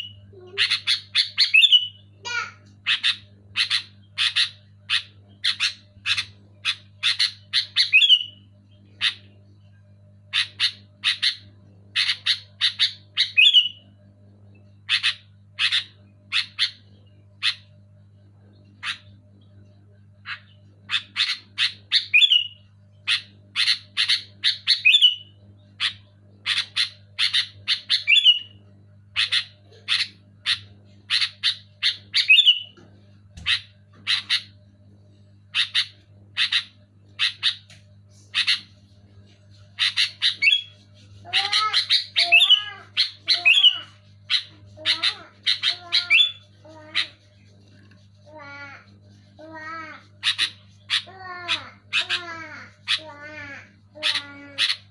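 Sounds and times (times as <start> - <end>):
bird chirping: 0.0 - 2.1, 2.8 - 13.8, 14.5 - 17.7, 18.7 - 28.6, 29.2 - 32.8, 33.4 - 34.6, 35.5 - 38.7, 39.5 - 47.2
steady low hum: 0.0 - 54.9.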